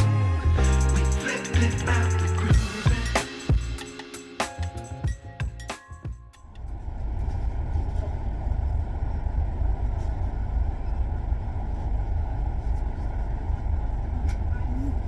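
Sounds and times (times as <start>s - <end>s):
car driving rumble: 6.4s - 15.0s.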